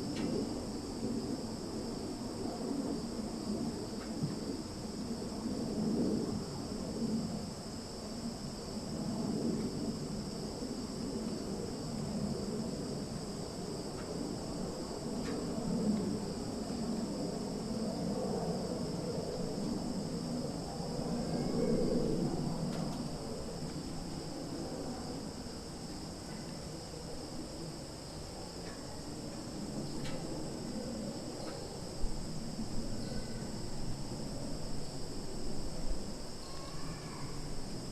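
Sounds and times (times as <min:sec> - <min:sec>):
crickets and cicadas droning: 0:00.0 - 0:37.9
insect chorus high trill: 0:36.3 - 0:37.9.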